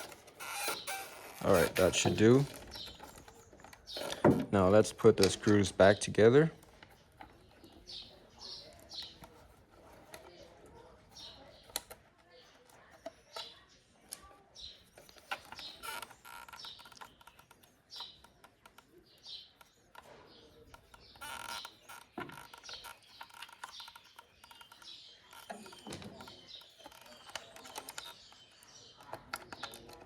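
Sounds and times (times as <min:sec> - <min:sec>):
birds chirping: 0:00.0 - 0:30.0
small parts clicking and tapping: 0:00.0 - 0:30.0.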